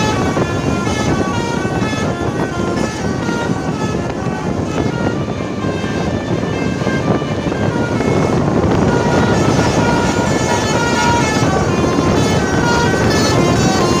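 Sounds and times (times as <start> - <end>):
loud steady noise: 0.0 - 14.0
multi-tone bus air horn melody: 0.0 - 14.0.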